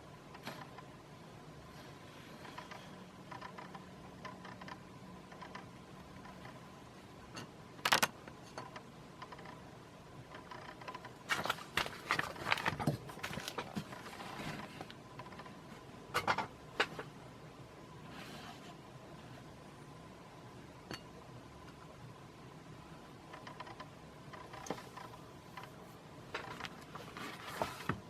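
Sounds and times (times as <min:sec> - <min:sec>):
paper pages rustling and crackling: 0:11.3 - 0:15.0, 0:26.4 - 0:28.0.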